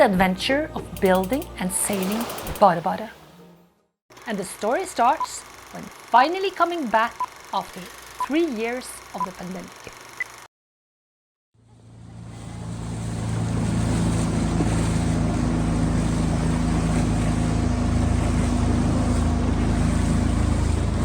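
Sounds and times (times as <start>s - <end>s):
motorboat engine running: 0.1s - 2.8s, 11.6s - 21.0s
water wash: 12.7s - 21.0s.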